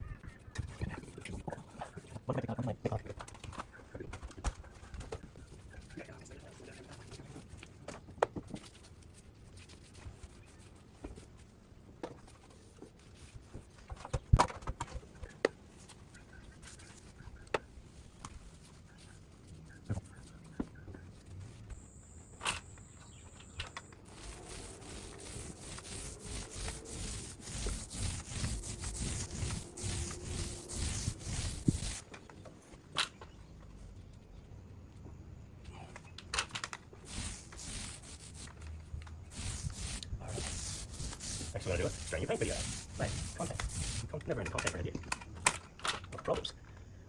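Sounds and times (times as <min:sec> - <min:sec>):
tool rubbing on drywall: 0:24.0 - 0:32.1, 0:37.0 - 0:38.5, 0:39.3 - 0:44.2.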